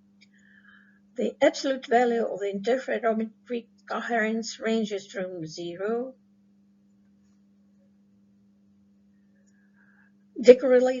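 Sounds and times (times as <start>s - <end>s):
faint electrical hum: 0.0s - 11.0s
person speaking: 10.4s - 11.0s.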